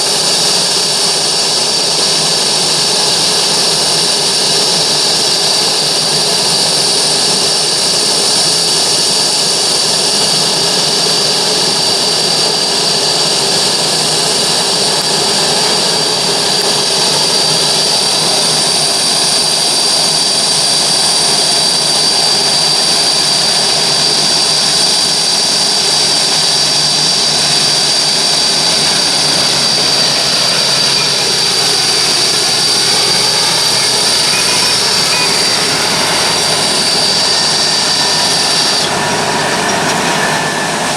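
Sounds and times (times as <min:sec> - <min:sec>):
jet engines whining: 0:00.0 - 0:40.9
sweeping tones: 0:26.8 - 0:40.9.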